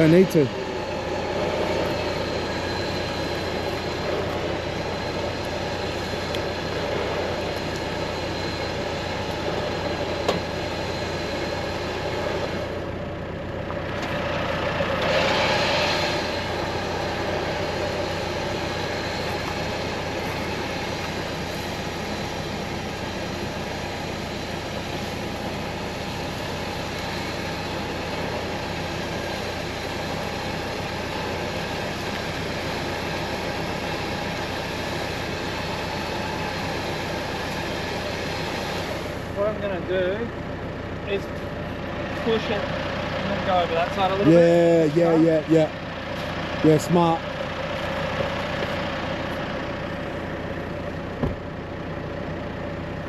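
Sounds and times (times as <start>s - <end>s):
car engine running: 0.0s - 53.0s.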